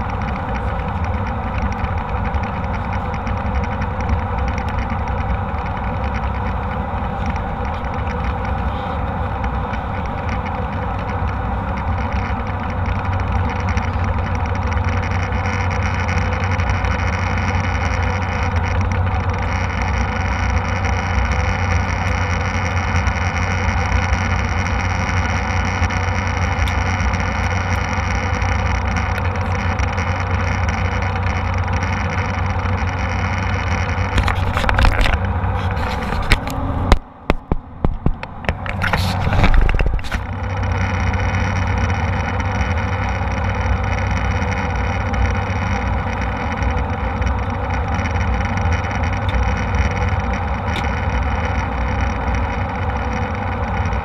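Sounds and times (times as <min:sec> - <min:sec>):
airliner cabin drone: 0:00.0 - 0:54.0
knocks and scrapes near microphone: 0:34.0 - 0:41.0.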